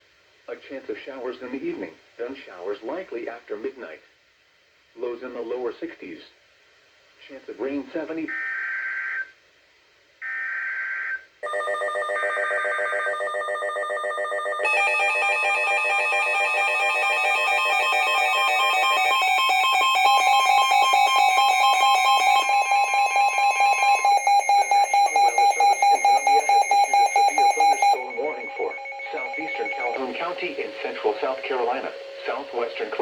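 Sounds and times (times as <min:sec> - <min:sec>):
multi-tone alert alarm: 0:10.2 - 0:33.0.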